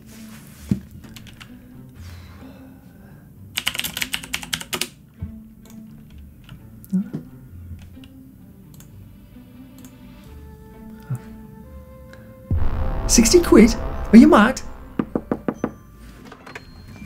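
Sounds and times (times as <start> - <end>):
background music: 0.0 - 17.0.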